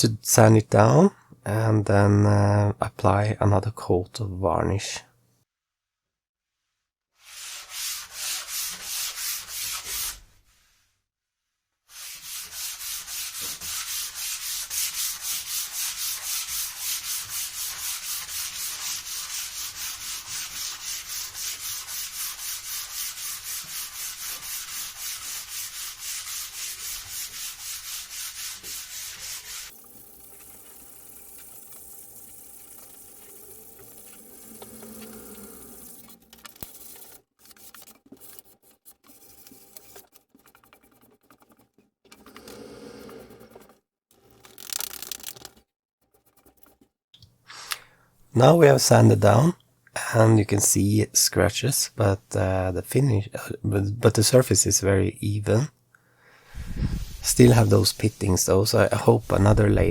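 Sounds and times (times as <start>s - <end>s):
scratchy sanding strokes: 7.2s - 10.8s, 11.9s - 38.5s, 56.6s - 59.9s.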